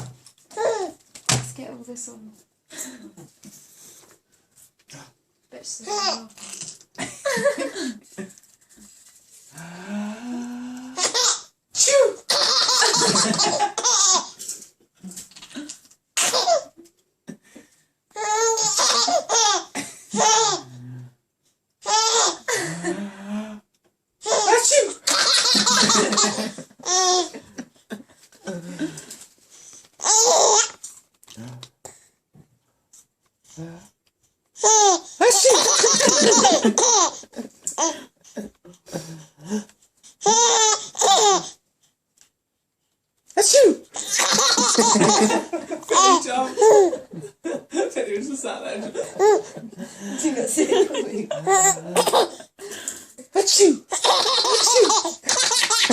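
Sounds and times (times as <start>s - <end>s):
baby laughing: 11.0s - 14.4s, 16.2s - 16.8s, 18.2s - 20.7s, 21.8s - 22.6s, 24.2s - 27.4s, 30.0s - 30.8s, 34.6s - 38.0s, 40.2s - 41.6s, 43.4s - 47.1s, 49.0s - 49.6s, 50.8s - 52.4s, 53.9s - 55.9s.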